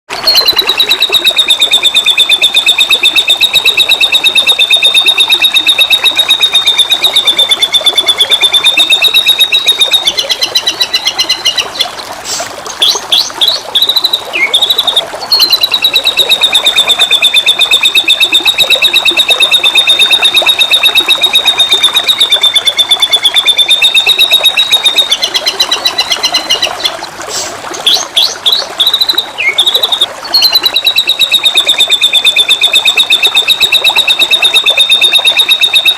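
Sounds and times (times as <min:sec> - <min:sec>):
bird singing fast trill: 0:00.1 - 0:11.9, 0:12.8 - 0:26.9, 0:27.9 - 0:35.9
faint running water: 0:00.1 - 0:35.9.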